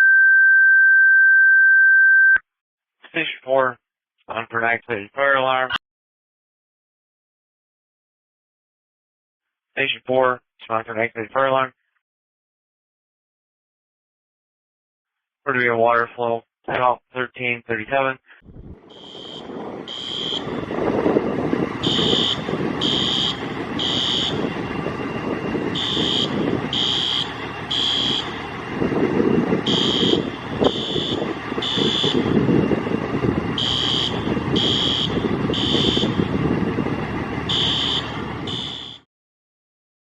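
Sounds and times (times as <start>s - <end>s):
large vehicle engine rumble: 18.5s - 39.0s
high electronic alarm beeps: 18.9s - 20.7s, 21.7s - 28.6s, 29.6s - 36.3s, 37.5s - 39.0s.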